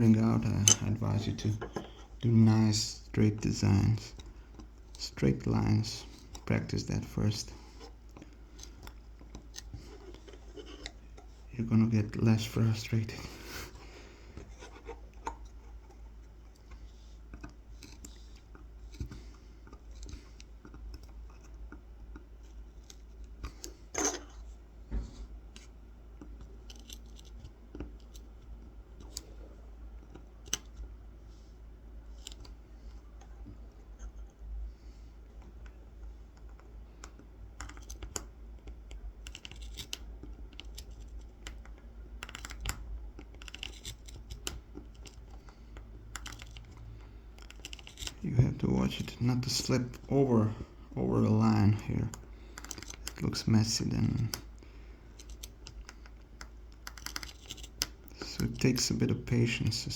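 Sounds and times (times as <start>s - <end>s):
knife scratching wood: 47.4s - 48.3s.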